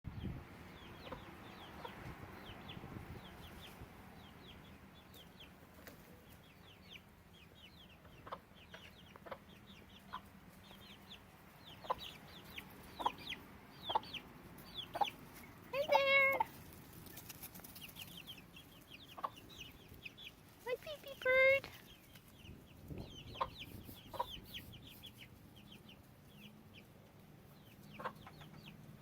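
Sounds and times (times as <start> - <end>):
hens clucking: 0.8 - 2.6, 7.8 - 29.0.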